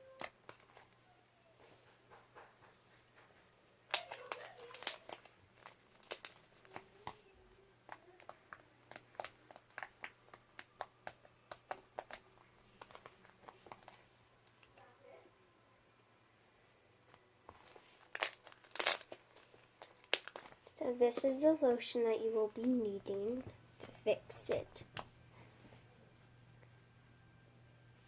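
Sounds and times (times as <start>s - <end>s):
slime clicking and popping: 3.9s - 6.8s, 7.9s - 14.0s, 18.1s - 19.2s, 19.8s - 20.5s.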